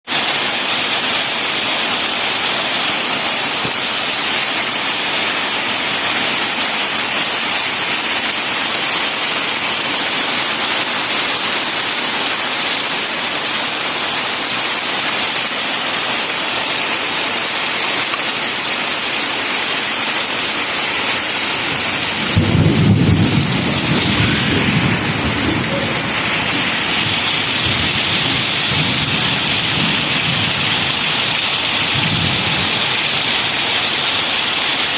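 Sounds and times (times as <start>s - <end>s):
steady rain falling: 0.1s - 34.9s
thunder rumbling: 21.6s - 33.3s.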